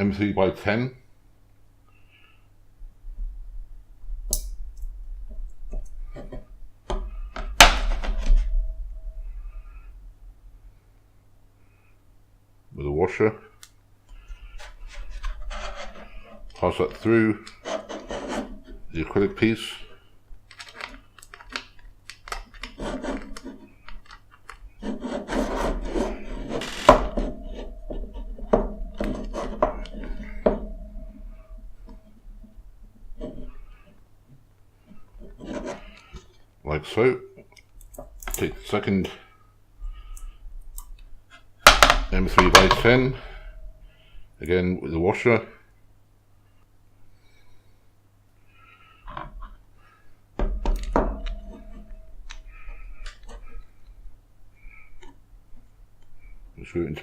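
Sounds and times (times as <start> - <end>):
rubbing and scraping: 14.1 - 34.1, 34.8 - 36.5, 48.5 - 55.2.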